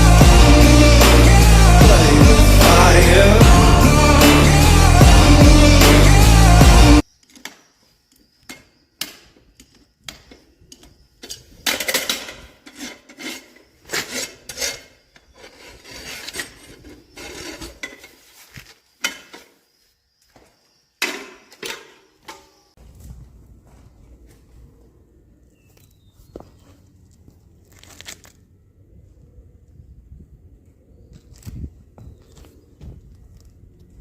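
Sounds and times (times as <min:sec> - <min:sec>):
rock music: 0:00.0 - 0:07.0
farrier's tools scraping hoof: 0:11.2 - 0:19.6.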